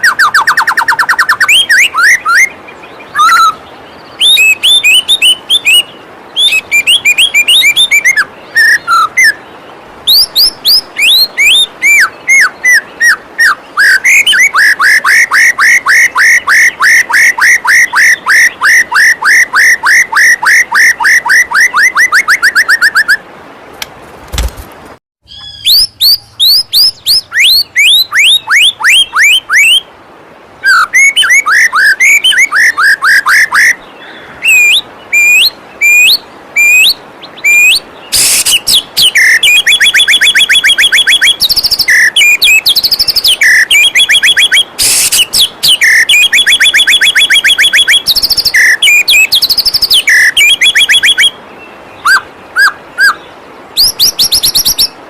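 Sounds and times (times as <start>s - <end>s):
bird whistles and trills: 0.0s - 9.4s, 10.0s - 23.2s, 25.3s - 29.9s, 30.6s - 33.8s, 34.4s - 55.0s
waterfall rushing: 0.0s - 23.8s.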